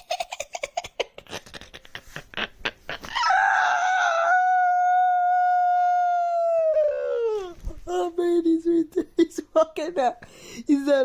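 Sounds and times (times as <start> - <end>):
cat yowling: 3.2 - 7.1.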